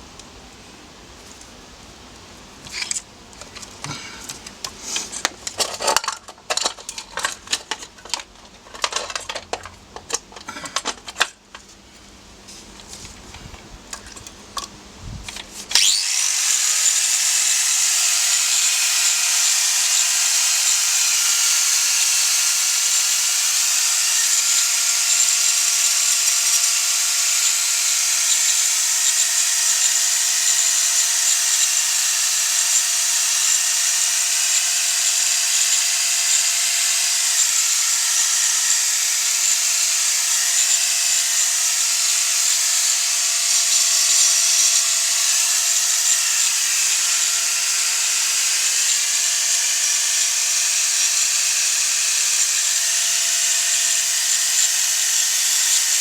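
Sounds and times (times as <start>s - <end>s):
tools clicking and knocking: 2.6s - 11.7s, 12.8s - 15.9s
power tool whining: 15.3s - 56.0s.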